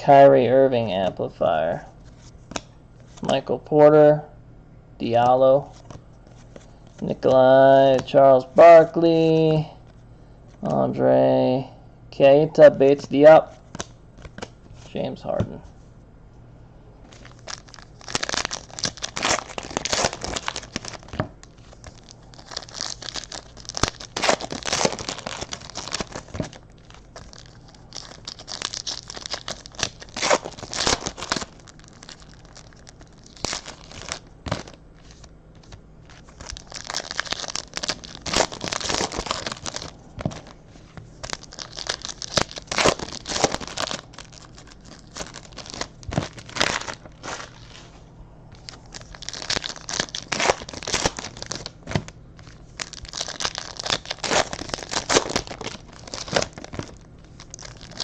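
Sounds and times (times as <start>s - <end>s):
wrappers tearing and crinkling: 17.1s - 48.0s, 48.6s - 58.0s.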